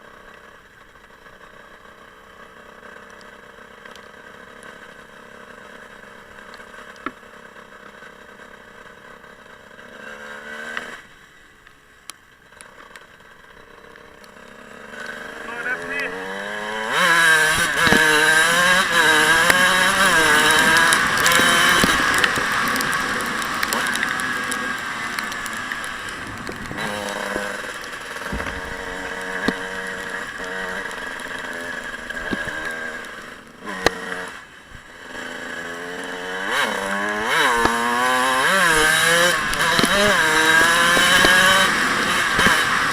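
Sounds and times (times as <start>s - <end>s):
dirt bike engines revving: 12.5s - 42.9s.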